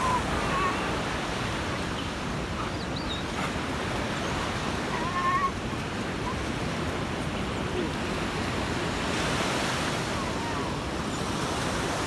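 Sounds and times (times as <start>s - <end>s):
sea surf: 0.0s - 2.6s, 6.4s - 12.0s.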